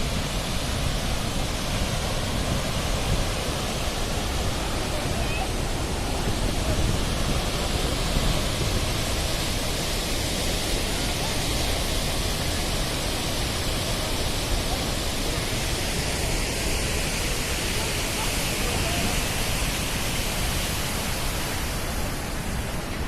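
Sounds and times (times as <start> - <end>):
waterfall rushing: 0.0 - 23.0.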